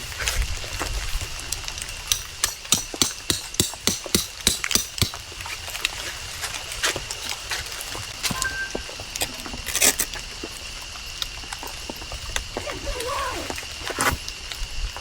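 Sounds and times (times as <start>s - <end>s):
faint high-pitched tone: 8.3s - 9.1s.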